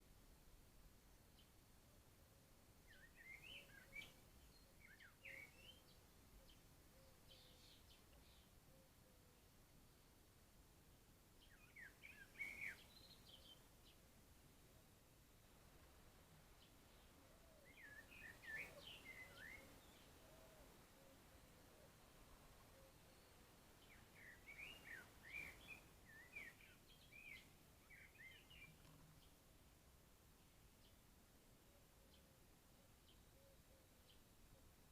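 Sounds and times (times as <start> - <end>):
faint steady background hiss: 0.0 - 34.9
songbird warbling and chirping: 2.9 - 9.4, 11.4 - 14.0, 16.6 - 21.9, 22.6 - 29.4.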